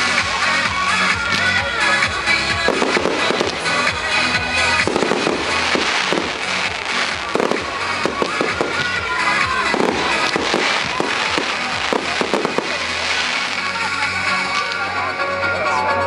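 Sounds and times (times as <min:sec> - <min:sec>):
fireworks bangs and crackles: 0:00.0 - 0:15.1
music playing: 0:00.0 - 0:16.0.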